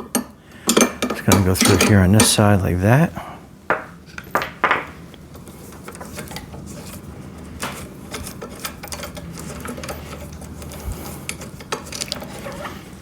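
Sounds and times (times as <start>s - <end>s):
metal parts clinking and rattling: 0.6s - 2.4s, 7.7s - 12.7s.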